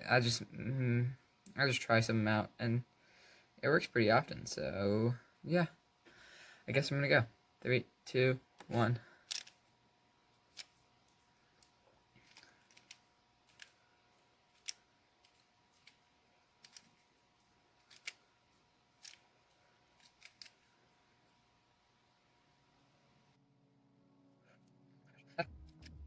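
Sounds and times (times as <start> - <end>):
plastic puzzle clicking: 9.3 - 9.6, 11.6 - 13.8, 16.6 - 16.9, 17.8 - 18.2, 20.0 - 20.6.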